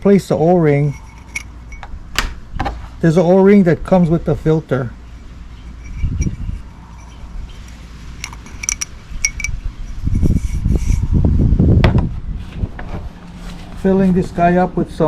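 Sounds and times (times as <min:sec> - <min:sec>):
low rumbling handling noise: 0:00.0 - 0:14.5
metallic clinks of small tools: 0:00.7 - 0:01.9, 0:05.8 - 0:09.6.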